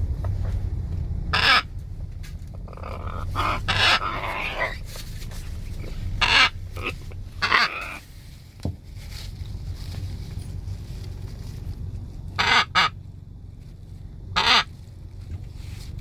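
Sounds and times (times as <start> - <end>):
low steady rumble: 0.0 - 16.0
parrot squawking: 1.3 - 1.7, 2.7 - 4.8, 5.9 - 8.0, 12.4 - 13.0, 14.4 - 14.7.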